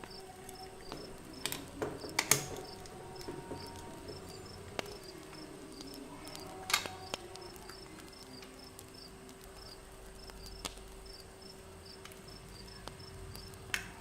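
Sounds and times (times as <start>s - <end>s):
sharp clicks and knocks: 0.0s - 8.2s
cricket chirping: 0.0s - 13.6s.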